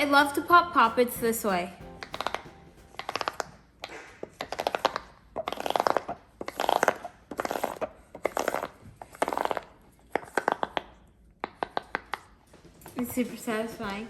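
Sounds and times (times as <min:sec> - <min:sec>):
fidget toy snapping pops: 0:02.0 - 0:05.0.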